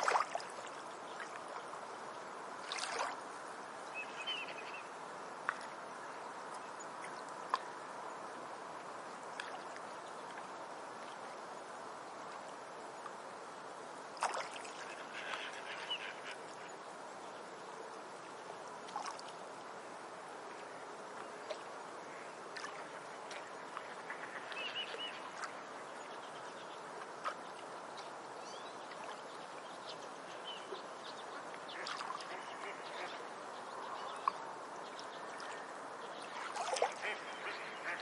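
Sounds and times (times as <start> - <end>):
running water: 0.0 - 38.0
bird calls and chirps: 3.9 - 4.9, 23.8 - 25.4.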